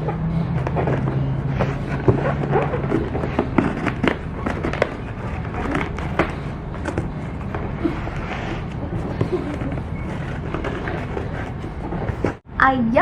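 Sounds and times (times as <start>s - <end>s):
cardboard box crackling and rustling: 0.0s - 12.4s.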